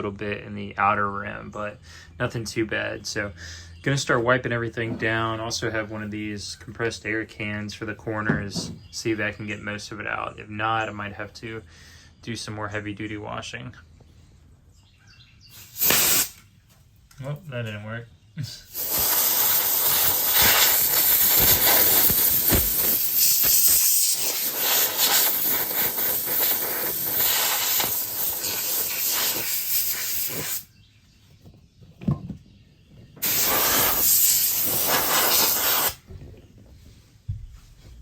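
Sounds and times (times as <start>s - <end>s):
compressed air can hissing: 15.5s - 16.4s, 18.6s - 30.7s, 33.2s - 36.0s.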